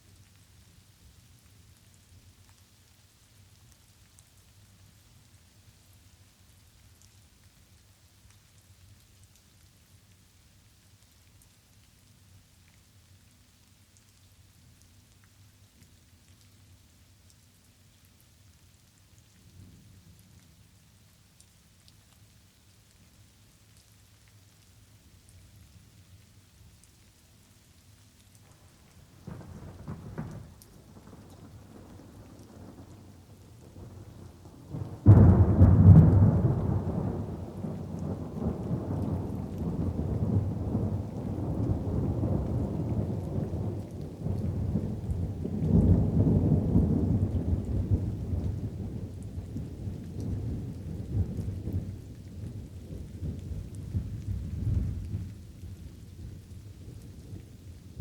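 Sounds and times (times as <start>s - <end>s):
light rain: 0.0s - 58.0s
thunder rumbling: 28.6s - 55.7s.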